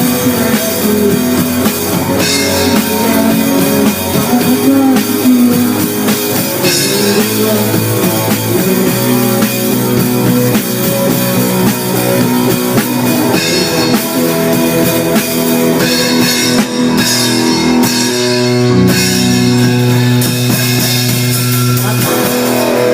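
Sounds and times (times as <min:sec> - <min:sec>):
rock music with drums and guitar: 0:00.0 - 0:22.9.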